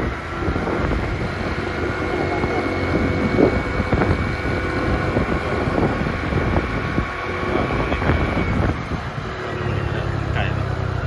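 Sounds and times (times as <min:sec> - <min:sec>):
motorbike engine running: 0:00.0 - 0:11.0
wind buffeting microphone: 0:00.0 - 0:11.0.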